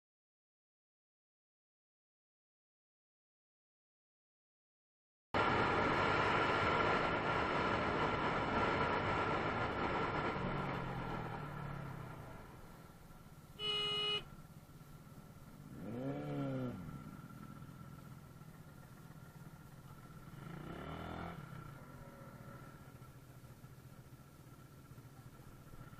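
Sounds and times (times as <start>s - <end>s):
short horn beep: 13.6s - 14.3s
engines revving: 15.6s - 17.2s.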